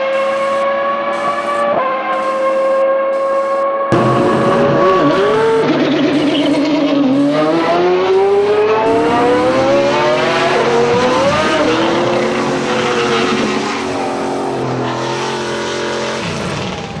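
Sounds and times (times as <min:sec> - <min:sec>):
car engine revving: 0:03.8 - 0:17.0.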